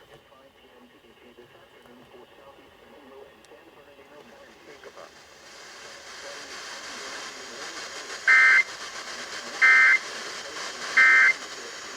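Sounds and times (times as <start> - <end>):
faint hiss: 3.1 - 11.9.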